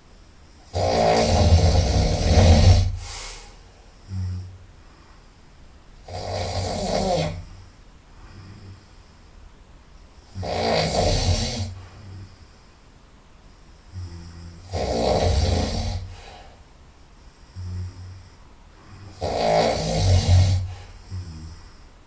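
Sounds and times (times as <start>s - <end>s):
person snoring through the nose: 0.6s - 4.6s, 6.0s - 9.0s, 10.3s - 12.6s, 13.9s - 16.6s, 17.4s - 21.9s
faint breath: 2.8s - 5.7s, 7.4s - 10.3s, 11.6s - 14.6s, 16.0s - 19.2s, 20.5s - 22.0s.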